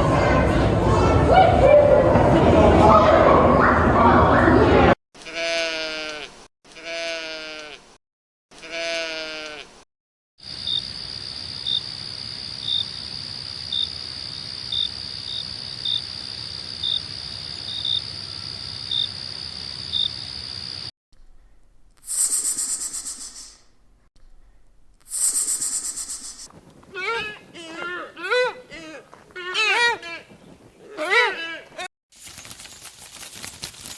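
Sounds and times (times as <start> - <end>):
sheep or goat bleating: 5.2 - 7.9, 8.6 - 9.8, 26.9 - 30.3
insect chirp: 10.4 - 20.9, 22.0 - 23.6, 25.1 - 26.6
insect drone: 10.4 - 20.9, 22.0 - 23.6, 25.1 - 26.5
high rasping bursts: 22.0 - 23.7, 25.1 - 26.5.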